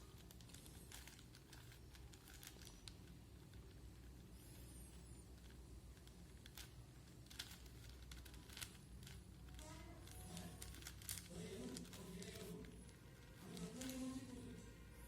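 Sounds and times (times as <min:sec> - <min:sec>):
puzzle cube clicking: 0:05.4 - 0:12.6
faint background voice: 0:09.6 - 0:15.0.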